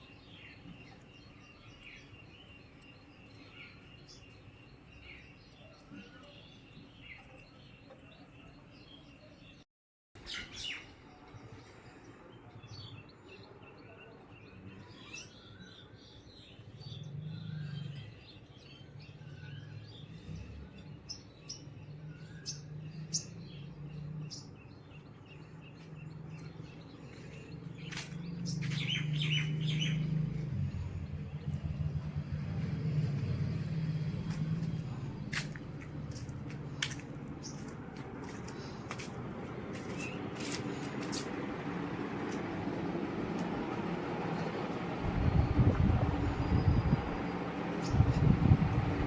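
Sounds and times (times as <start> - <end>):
birds chirping: 0.0 - 9.6, 10.2 - 49.0
low steady drone: 40.8 - 49.0.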